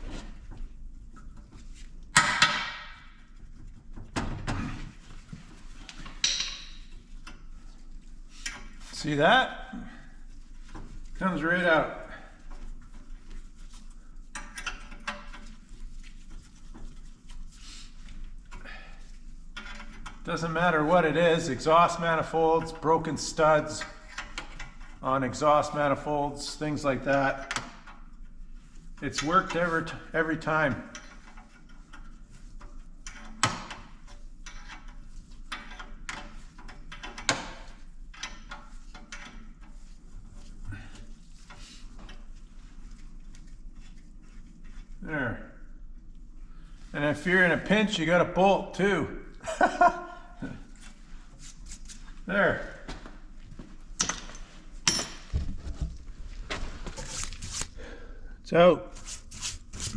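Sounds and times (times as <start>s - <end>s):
tools clicking and knocking: 6.1s - 7.4s, 33.0s - 39.4s, 54.0s - 56.0s
metal parts scraping and clicking: 56.9s - 57.8s.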